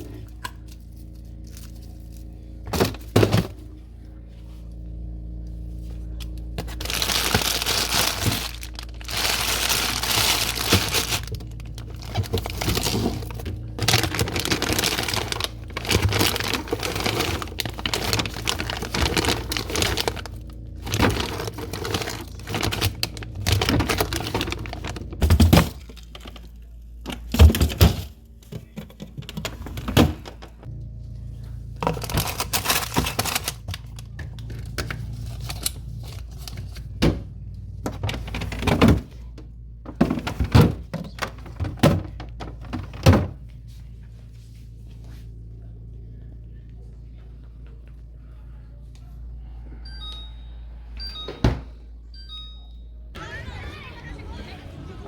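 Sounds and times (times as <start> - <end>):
plastic packaging crinkling: 6.6 - 26.6, 31.8 - 34.0.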